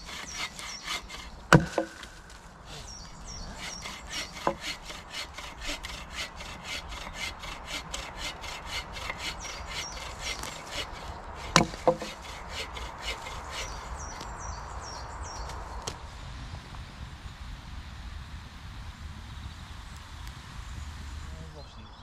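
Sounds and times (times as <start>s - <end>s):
hand saw cutting wood: 0.0s - 2.1s, 3.4s - 14.2s
sharp knocks: 1.5s - 2.1s, 4.4s - 4.8s, 11.4s - 13.2s.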